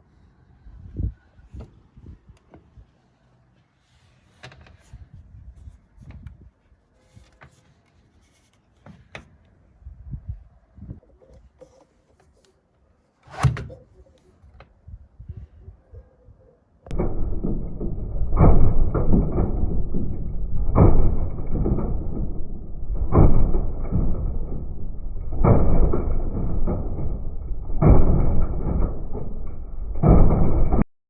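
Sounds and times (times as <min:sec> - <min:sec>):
washing machine drum rumbling: 0:16.9 - 0:30.9.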